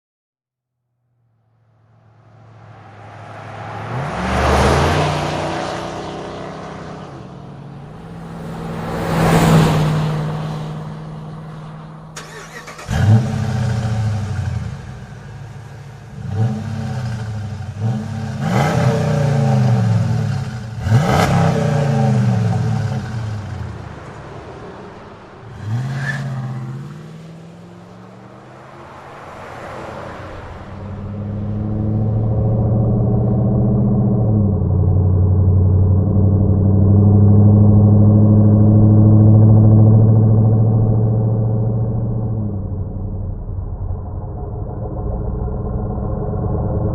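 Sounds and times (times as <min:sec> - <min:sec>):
truck engine revving: 0:02.2 - 0:24.1, 0:25.0 - 0:28.7.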